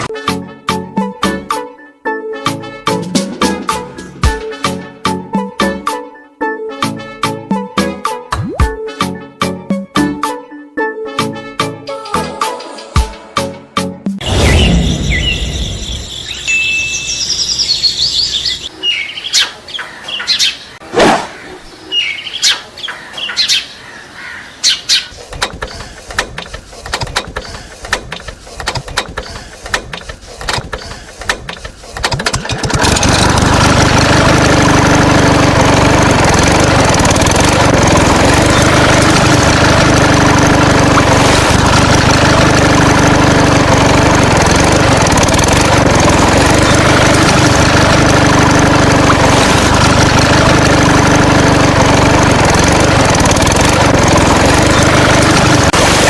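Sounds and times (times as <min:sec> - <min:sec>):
short chirps: 0:14.2 - 0:18.7
scattered clicks and knocks: 0:25.2 - 0:32.8
steady engine-like drone: 0:35.5 - 0:56.0.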